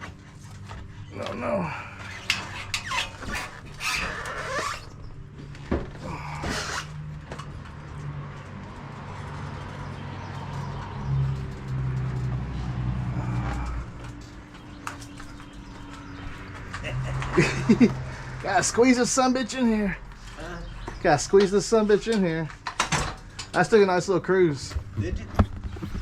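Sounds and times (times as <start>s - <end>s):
short squeaks: 2.0s - 5.3s.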